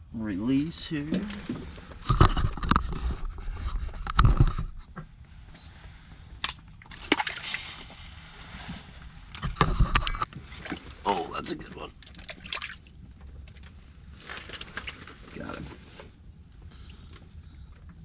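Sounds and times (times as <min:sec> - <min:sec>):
water sloshing and splashing: 0:06.3 - 0:17.2.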